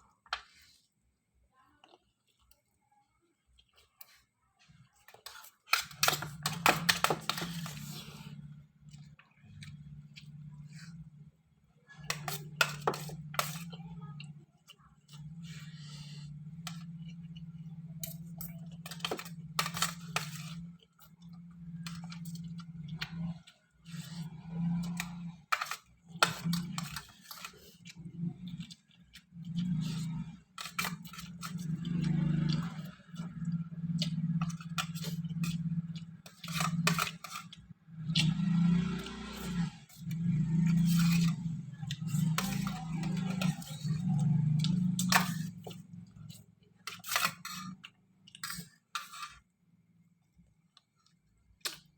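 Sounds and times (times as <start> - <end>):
chewing: 5.0 - 11.1, 11.9 - 49.4
cutlery scraping a bowl: 5.1 - 8.4, 12.0 - 13.8, 15.1 - 22.7, 23.3 - 28.0, 29.5 - 49.4.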